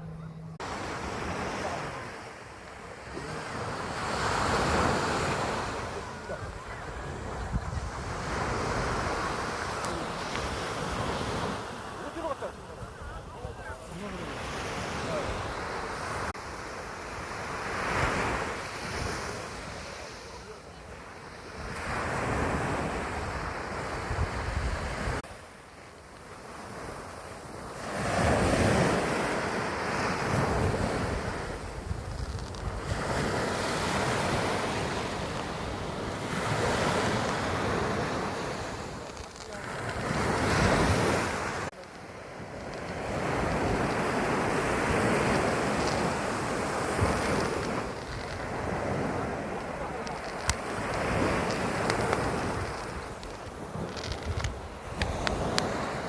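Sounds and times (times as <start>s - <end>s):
surf breaking on beach: 0.0s - 56.0s
wind buffeting microphone: 4.2s - 11.8s, 28.3s - 39.2s.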